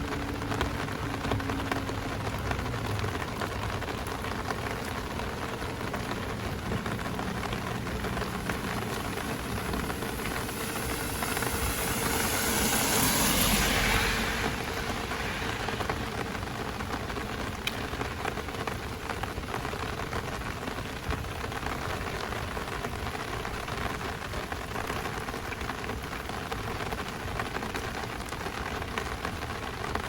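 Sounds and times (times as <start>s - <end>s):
heavy rain pattering on umbrella: 0.0s - 30.0s.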